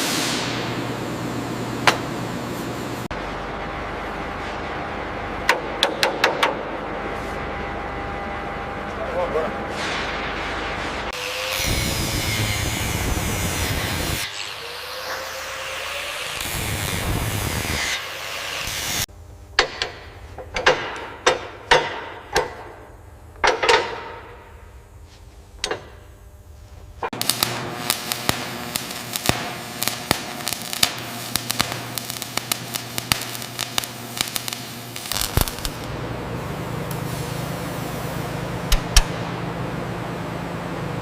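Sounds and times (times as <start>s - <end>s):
low machine hum: 19.0s - 41.0s.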